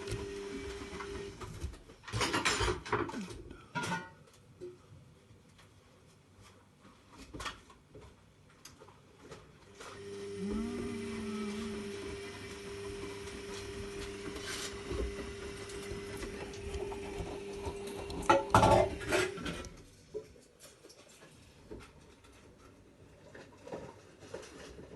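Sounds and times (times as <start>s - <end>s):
washing machine motor whine: 0.0s - 2.2s, 9.7s - 19.8s.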